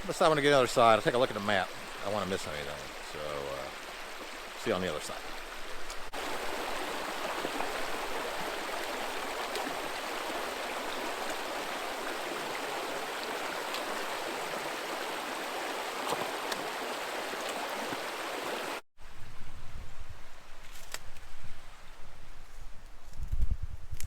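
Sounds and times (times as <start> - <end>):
creek water rushing over rocks: 0.0 - 18.8.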